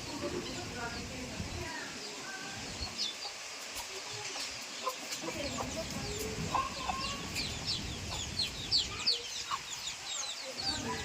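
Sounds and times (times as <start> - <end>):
wind rumbling on microphone: 0.0 - 3.2, 5.2 - 10.0
birds chirping rapidly: 0.0 - 11.0.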